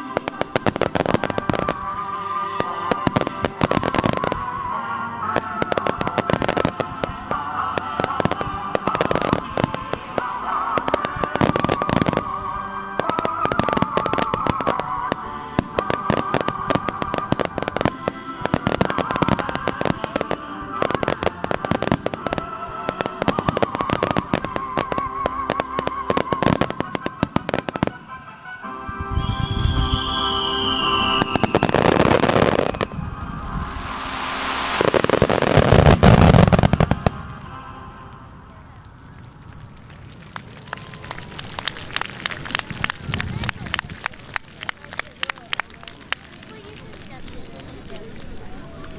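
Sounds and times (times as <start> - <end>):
music with wavering melody: 0.0 - 38.5
firework bursts and crackles: 0.0 - 48.9.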